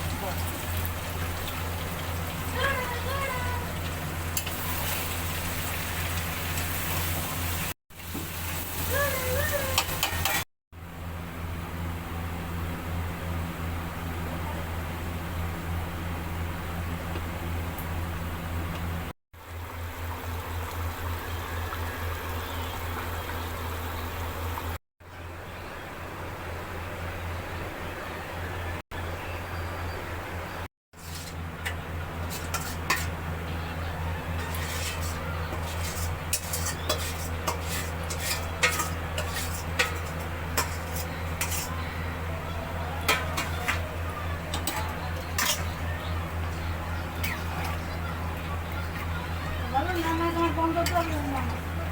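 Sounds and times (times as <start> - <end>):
curry bubbling and sizzling: 0.0 - 8.9, 31.0 - 33.4, 34.3 - 41.9, 43.0 - 51.9
spoon scraping a pan: 31.0 - 33.2, 34.3 - 41.9, 43.1 - 43.8, 44.5 - 45.8.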